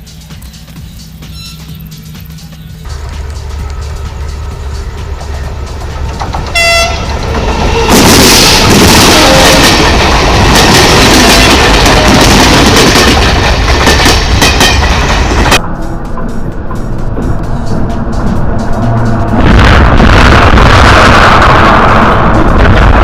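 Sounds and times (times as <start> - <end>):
train wheels clattering over rails: 2.9 - 15.6
train horn blast: 6.4 - 9.8.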